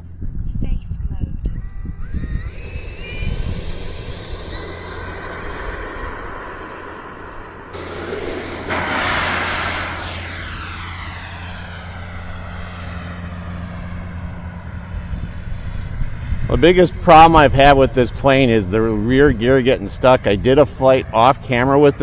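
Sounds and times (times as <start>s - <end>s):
electric jet fan whining: 7.8s - 13.6s.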